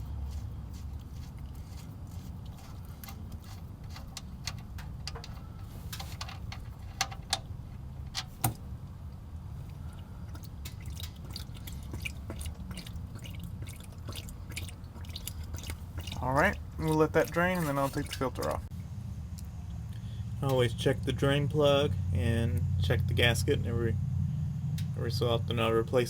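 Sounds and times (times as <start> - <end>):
oil dripping: 0.0 - 26.0
oil pouring into drain pan: 9.6 - 18.6.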